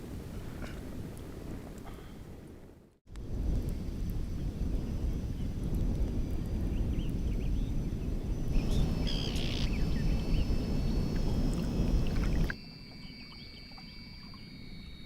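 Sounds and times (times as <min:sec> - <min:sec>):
strong wind buffeting microphone: 0:00.0 - 0:12.6
faint high chirps: 0:11.6 - 0:15.0.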